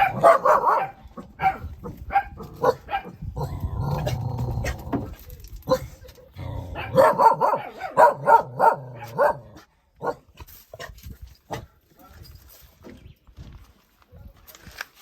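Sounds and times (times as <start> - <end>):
dog barking: 0.0 - 3.2, 6.7 - 10.3.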